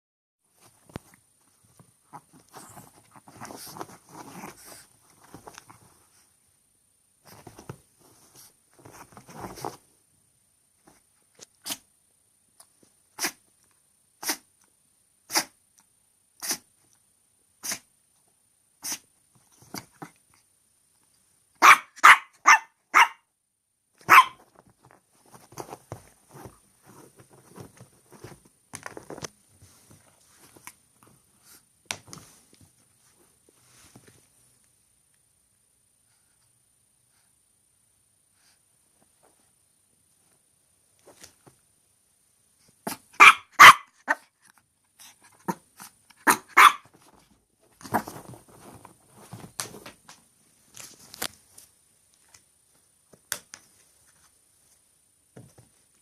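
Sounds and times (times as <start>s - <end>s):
dog sneezing: 11.6s - 11.8s, 13.2s - 13.4s, 14.2s - 14.5s, 15.3s - 15.6s, 16.4s - 16.7s, 17.6s - 17.9s, 18.8s - 19.1s.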